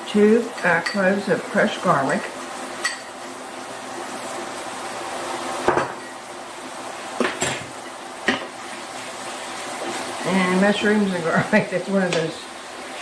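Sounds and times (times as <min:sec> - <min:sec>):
food sizzling in butter: 0:00.0 - 0:13.0.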